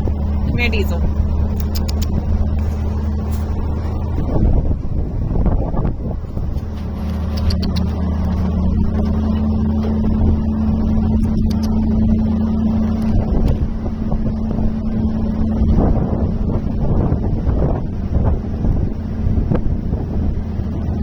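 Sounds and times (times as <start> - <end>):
machine engine humming: 0.0 - 21.0
faint clicks: 1.6 - 2.2.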